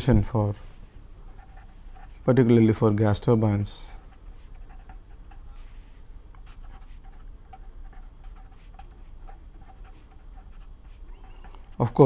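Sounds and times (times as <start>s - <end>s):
pen scratching on paper: 1.3s - 2.2s, 4.0s - 12.0s.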